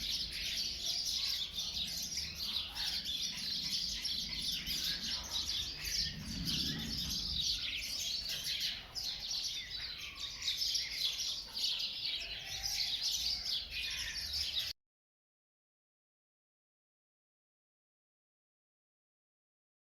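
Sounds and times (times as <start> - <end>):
small birds chirping: 0.0 - 14.8.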